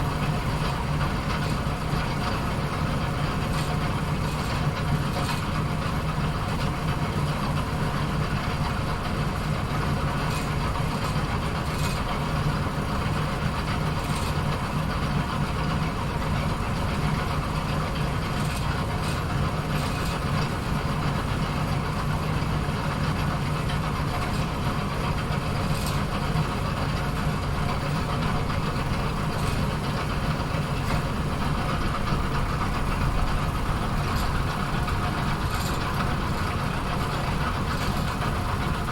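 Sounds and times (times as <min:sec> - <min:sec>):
pinsetter machine humming: 0:26.3 - 0:38.9.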